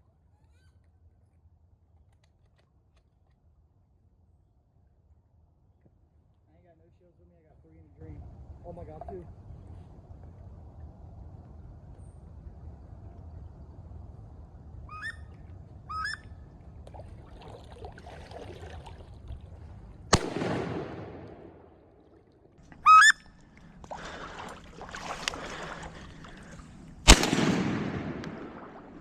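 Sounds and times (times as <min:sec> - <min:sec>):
ducks squealing calls: 0:14.9 - 0:15.3, 0:15.9 - 0:16.3, 0:22.7 - 0:23.3
shotgun shots echoing: 0:20.1 - 0:21.9, 0:27.1 - 0:29.0.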